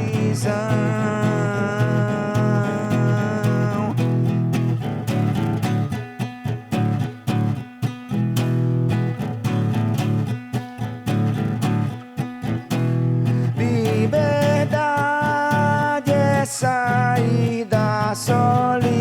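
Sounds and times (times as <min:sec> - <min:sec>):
person singing: 0:00.0 - 0:04.7, 0:12.7 - 0:19.0
guitar plucked notes: 0:00.0 - 0:19.0.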